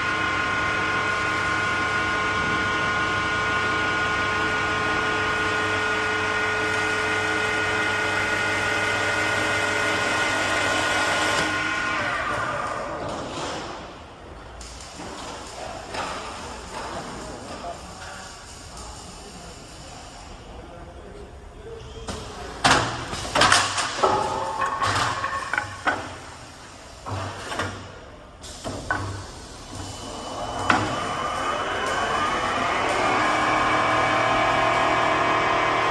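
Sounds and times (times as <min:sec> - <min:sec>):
lathe machinery knocking and clunking: 0:22.6 - 0:26.4
wood lathe whining: 0:30.1 - 0:35.9.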